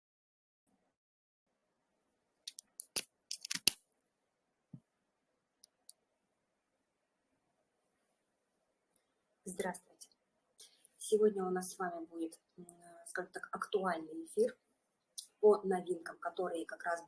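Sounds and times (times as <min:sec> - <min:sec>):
handling clicks and crackles: 0:02.5 - 0:03.8.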